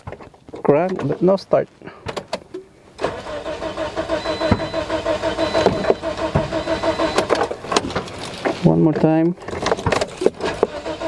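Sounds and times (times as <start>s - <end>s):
car engine cranking on starter: 3.0s - 8.7s, 10.0s - 11.0s.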